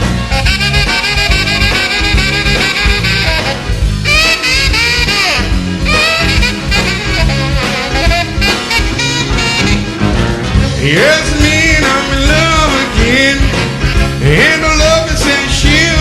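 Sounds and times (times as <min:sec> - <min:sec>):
band swinging beat: 0:00.0 - 0:16.0
saxophone solo: 0:00.1 - 0:10.2, 0:13.3 - 0:14.3.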